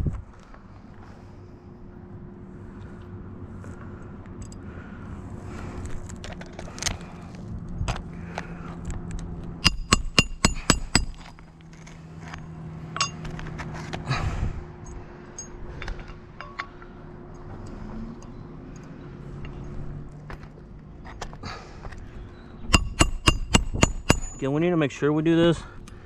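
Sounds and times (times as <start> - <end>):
hammer striking roofing nail: 9.6 - 11.3, 22.7 - 24.4
nails clinking and scraping: 9.6 - 13.7, 22.7 - 24.5.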